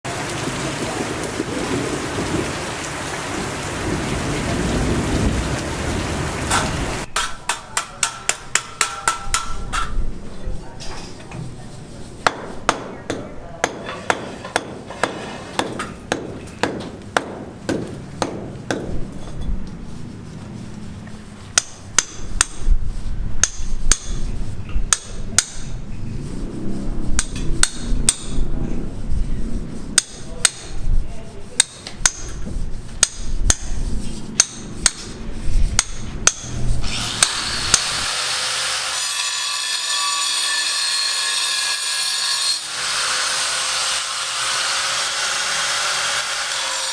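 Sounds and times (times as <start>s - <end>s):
hammer blows: 12.2s - 19.6s
power saw cutting: 36.8s - 46.9s.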